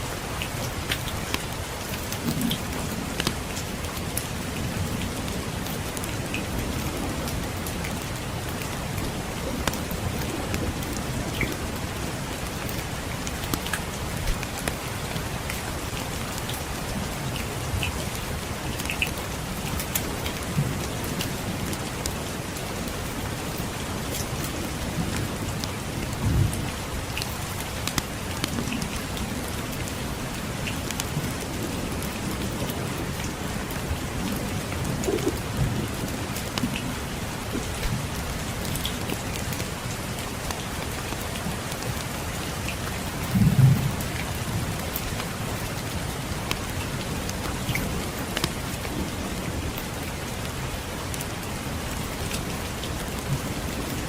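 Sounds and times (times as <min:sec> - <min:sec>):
steady rain: 0:00.0 - 0:54.0
distant thunder rumbling: 0:34.2 - 0:38.0.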